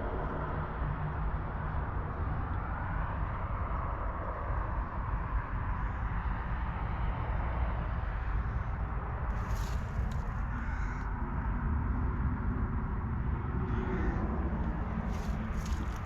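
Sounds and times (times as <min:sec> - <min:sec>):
tractor diesel engine running: 0:14.6 - 0:16.0.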